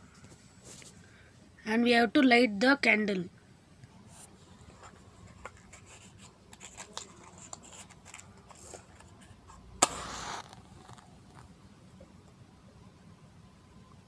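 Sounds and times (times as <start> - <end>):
matchbox clicks and scrapes: 5.4 - 9.1, 9.8 - 11.5
match striking and flaring: 9.8 - 11.5.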